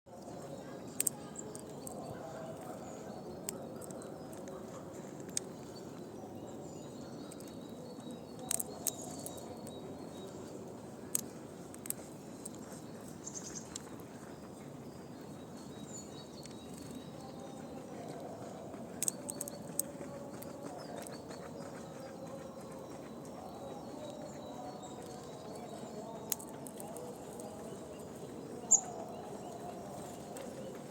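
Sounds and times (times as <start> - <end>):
faint bird chirps: 12.4 - 30.9.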